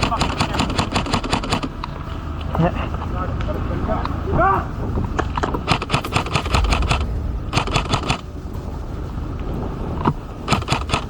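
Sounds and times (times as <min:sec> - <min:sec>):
airsoft rifles firing bursts: 0:00.0 - 0:01.7
low rumble: 0:00.0 - 0:11.0.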